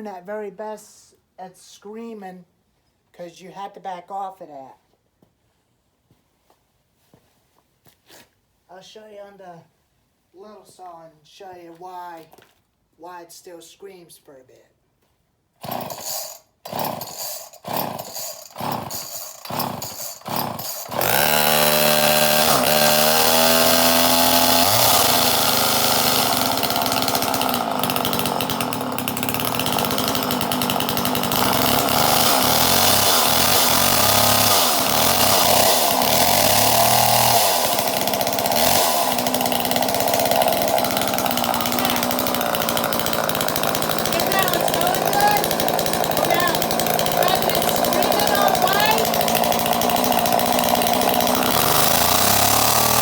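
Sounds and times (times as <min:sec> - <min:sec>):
chainsaw engine revving: 0:15.6 - 0:53.0
chainsaw pull-start strokes: 0:15.6 - 0:53.0.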